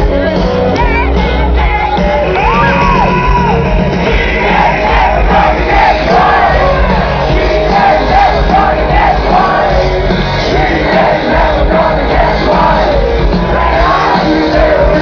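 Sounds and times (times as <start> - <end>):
crowd singing and yelling: 0.0 - 15.0
rock band playing live: 0.0 - 15.0
singer's voice: 0.0 - 15.0.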